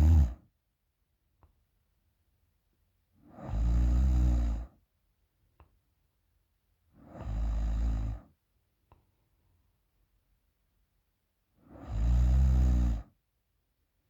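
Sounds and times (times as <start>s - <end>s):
woman snoring deeply: 0.0s - 0.4s, 3.3s - 4.7s, 7.0s - 8.3s, 11.7s - 13.1s.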